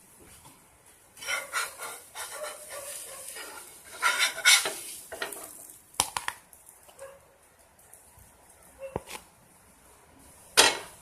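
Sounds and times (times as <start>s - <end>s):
utensil scraping in a pan: 1.2s - 5.7s.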